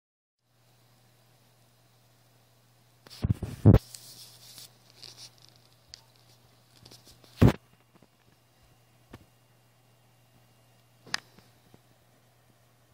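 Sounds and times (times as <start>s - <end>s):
steady low hum: 0.4s - 12.9s.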